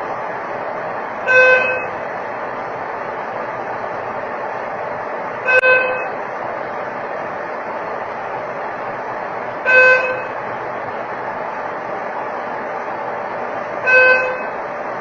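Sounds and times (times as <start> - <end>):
horn-like beeps: 1.3 - 1.9, 5.5 - 6.1, 9.7 - 10.4, 13.8 - 14.5.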